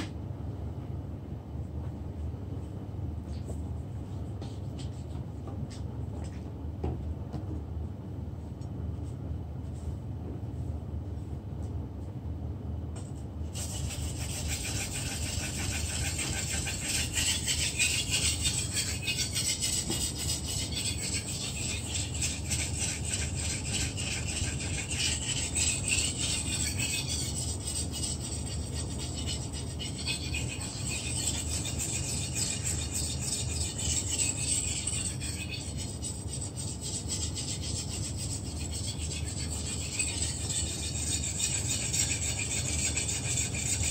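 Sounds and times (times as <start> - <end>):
low steady hum: 0.0 - 43.9
knife scraping on whetstone: 13.5 - 43.9.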